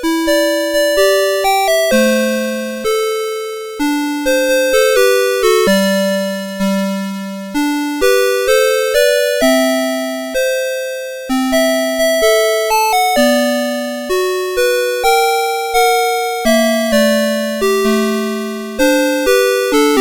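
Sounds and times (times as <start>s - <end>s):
alarm clock chime melody: 7.6s - 20.0s.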